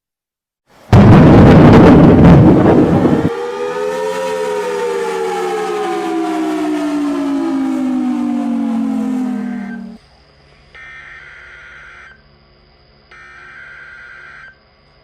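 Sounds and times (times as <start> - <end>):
warning siren winding down: 0.9 - 10.0, 13.1 - 14.6.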